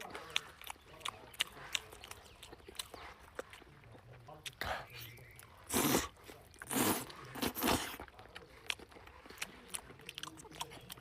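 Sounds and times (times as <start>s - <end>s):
clicking chewing sounds: 0.0s - 11.0s
crunching bites: 5.4s - 11.0s.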